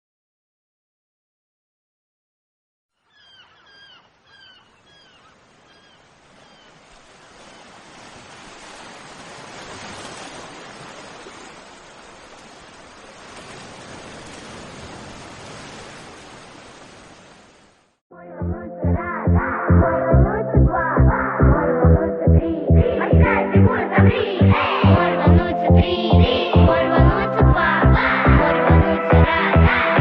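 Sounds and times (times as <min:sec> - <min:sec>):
bird crying: 0:03.0 - 0:06.8
sea waves washing: 0:04.4 - 0:18.0.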